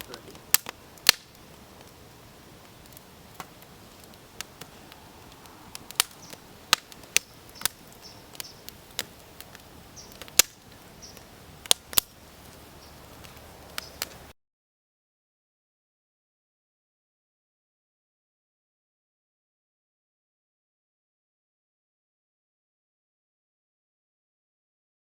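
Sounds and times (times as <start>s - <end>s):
low steady hiss: 0.0s - 14.3s
wood fire crackling and popping: 0.0s - 14.3s.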